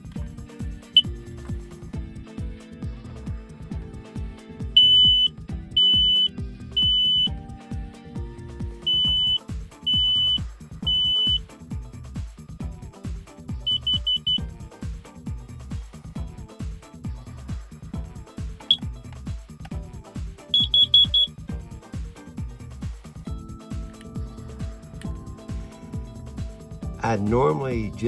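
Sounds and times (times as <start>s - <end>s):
background music with steady beat: 0.0s - 28.0s
smoke alarm beeping: 4.8s - 7.3s, 8.8s - 11.4s, 13.7s - 14.4s, 20.5s - 21.3s.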